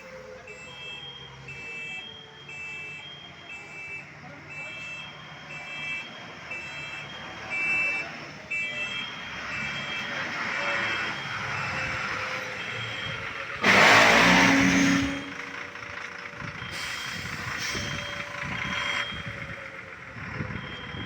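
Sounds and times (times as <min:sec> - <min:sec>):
vehicle noise: 0:00.0 - 0:21.0
electronic alarm beeping: 0:16.6 - 0:19.4, 0:20.5 - 0:21.0.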